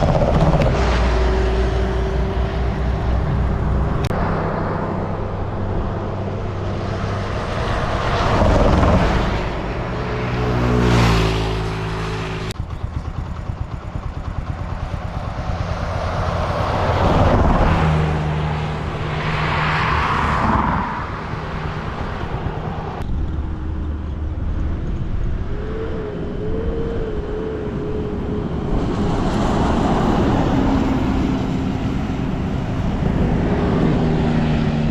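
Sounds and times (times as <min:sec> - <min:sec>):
steady engine sound: 0:00.0 - 0:19.6, 0:20.2 - 0:34.9
buses passing at speed: 0:00.0 - 0:34.9.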